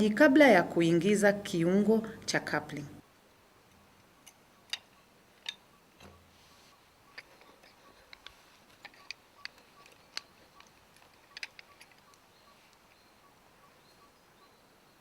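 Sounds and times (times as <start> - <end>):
faint regular ticking: 7.1 - 13.0.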